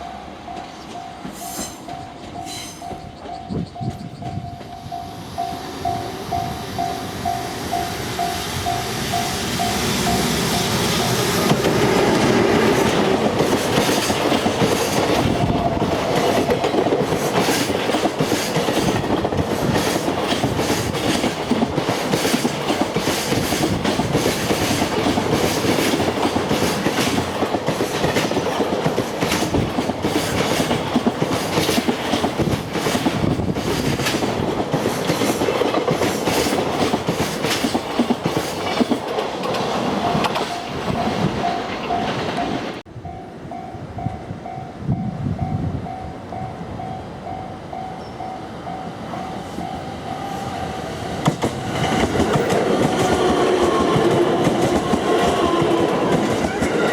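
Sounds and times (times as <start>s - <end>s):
faint level-crossing bell: 0.0s - 11.2s
train wheels clattering over rail joints: 10.0s - 42.8s, 51.0s - 56.9s.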